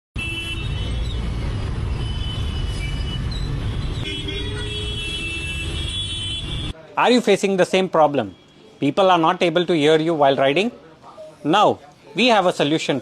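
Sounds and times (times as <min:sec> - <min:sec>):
vehicle horns sounding: 0:00.2 - 0:01.1, 0:04.0 - 0:06.8
traffic engines rumbling: 0:00.2 - 0:13.0.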